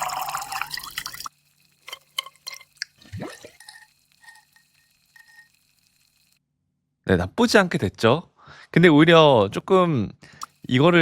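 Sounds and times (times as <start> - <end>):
liquid dripping: 0.0 - 6.4
liquid pouring and fizzing: 0.0 - 6.4
straw being turned in cup: 0.6 - 6.4.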